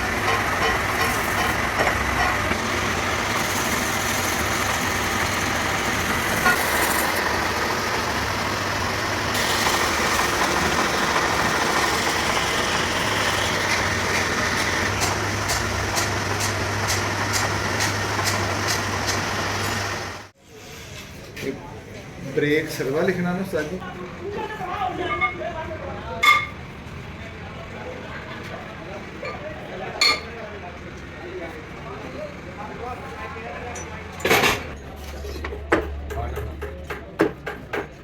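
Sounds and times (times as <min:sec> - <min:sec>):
truck engine running: 0:00.0 - 0:20.3.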